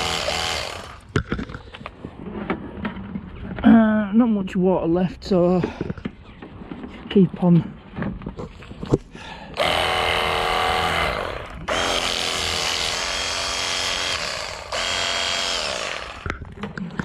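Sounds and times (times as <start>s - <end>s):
pressure washer motor whining: 0.0s - 1.0s, 9.6s - 16.4s.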